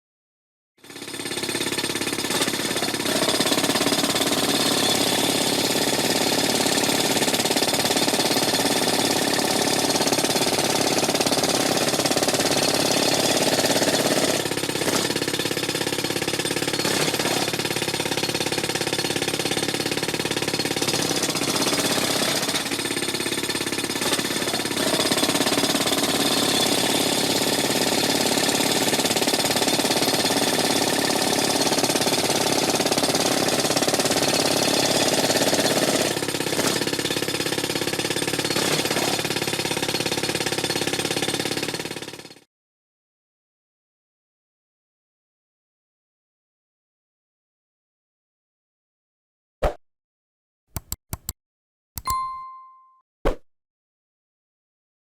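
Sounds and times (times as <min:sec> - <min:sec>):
jackhammer hammering: 0:00.8 - 0:42.4.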